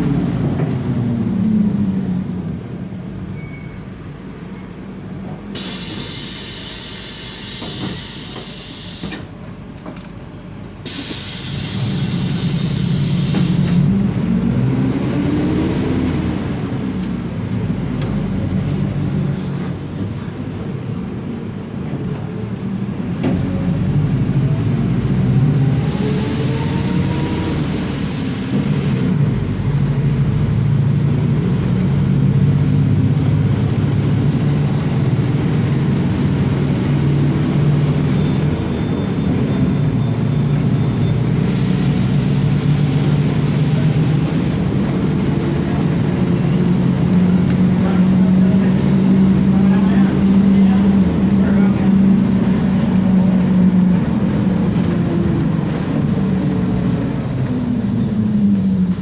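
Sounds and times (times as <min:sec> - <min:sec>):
diesel bus accelerating: 0:00.0 - 0:59.0
air hiss bursts: 0:05.6 - 0:09.1, 0:10.9 - 0:13.8.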